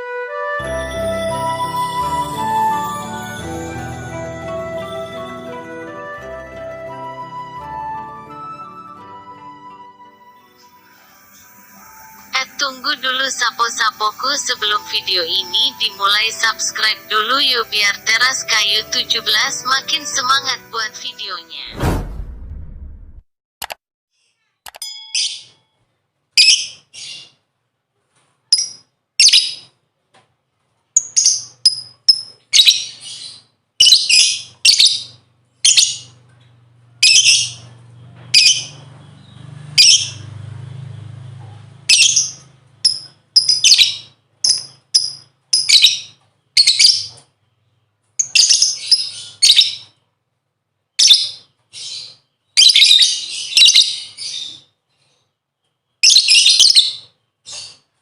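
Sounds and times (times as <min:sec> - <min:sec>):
bird chirping: 0:10.2 - 0:21.7, 0:31.0 - 0:36.4, 0:37.0 - 0:41.0, 0:41.9 - 0:50.0, 0:50.9 - 0:57.9.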